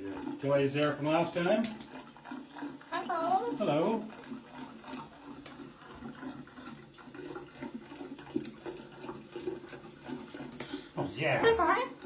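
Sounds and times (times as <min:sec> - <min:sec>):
running water: 0:00.0 - 0:12.0.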